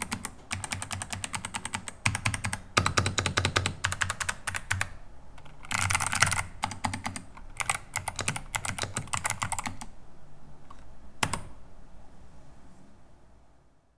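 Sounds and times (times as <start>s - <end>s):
clicky mechanical keyboard typing: 0.0s - 9.9s, 10.7s - 11.6s.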